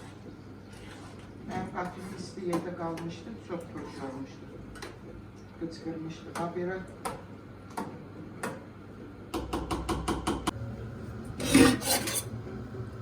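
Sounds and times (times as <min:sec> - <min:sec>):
spoon scraping pot: 0:11.4 - 0:12.4.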